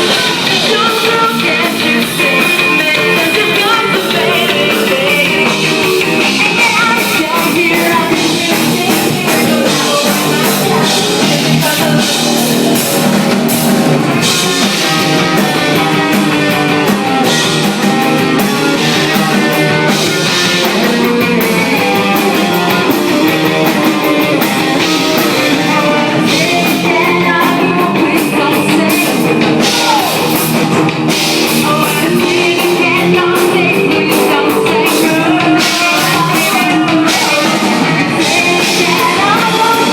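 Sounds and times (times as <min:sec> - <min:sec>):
live rock band with singing: 0:00.0 - 0:39.9.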